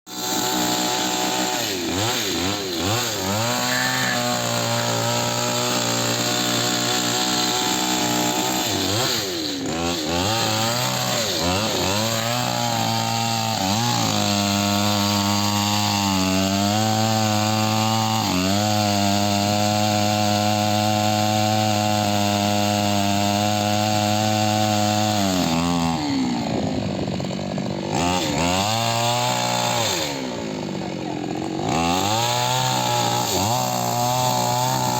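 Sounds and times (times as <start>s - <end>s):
chainsaw cutting wood: 0.1s - 34.9s.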